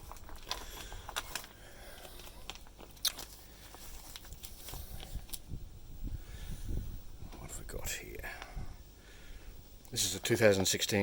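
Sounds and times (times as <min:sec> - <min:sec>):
plastic bags crinkling: 0:00.0 - 0:05.5.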